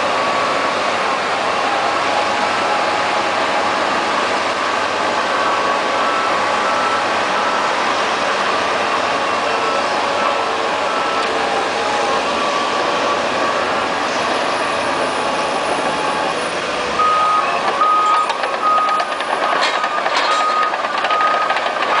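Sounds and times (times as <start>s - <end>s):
bulldozer running: 0.0s - 22.0s
reversing alarm beeping: 5.3s - 8.0s, 8.8s - 13.9s, 17.0s - 22.0s.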